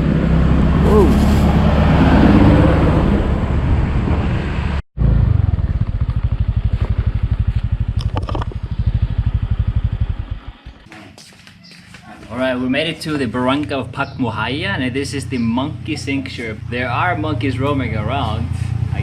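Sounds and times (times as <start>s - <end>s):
motorcycle engine idling: 5.0s - 10.9s
motorcycle engine running: 5.0s - 10.9s.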